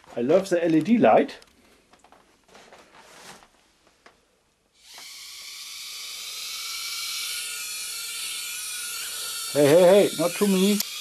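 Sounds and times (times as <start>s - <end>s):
faint handling noises: 0.0s - 4.3s
quadcopter motors whining: 4.8s - 11.0s.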